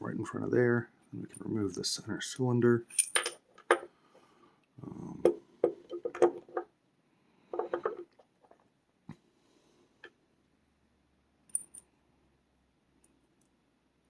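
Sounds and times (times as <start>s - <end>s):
lock parts rubbing: 5.2s - 6.7s, 7.5s - 8.6s.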